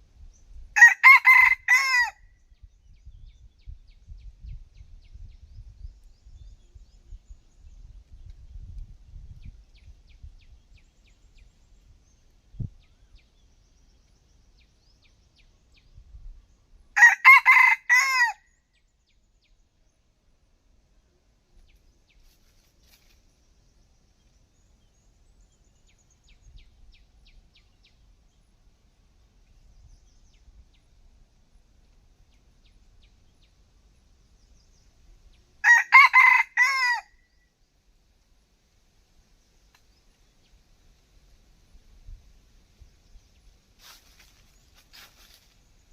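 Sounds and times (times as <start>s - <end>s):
rooster crowing: 0.8s - 2.2s, 17.0s - 18.4s, 35.6s - 37.1s.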